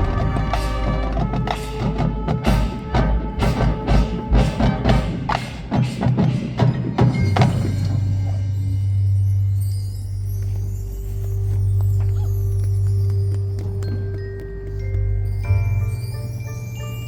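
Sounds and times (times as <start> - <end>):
marching band playing: 0.0 - 9.2.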